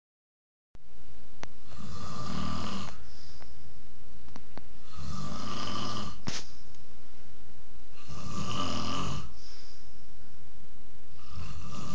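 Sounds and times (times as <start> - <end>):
man snoring: 1.6 - 3.0, 4.8 - 6.3, 7.9 - 9.4, 11.1 - 11.9.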